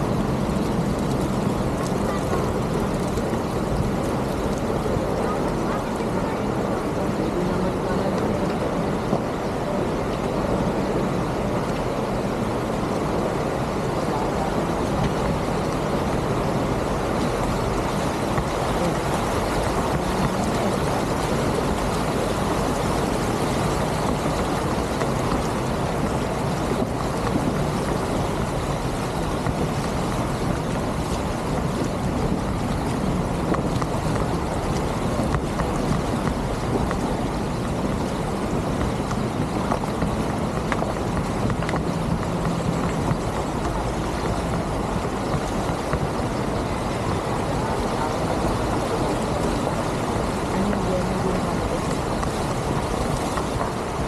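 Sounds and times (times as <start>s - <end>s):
rushing water: 0.0s - 54.0s
vehicle engine rumble: 0.0s - 54.0s.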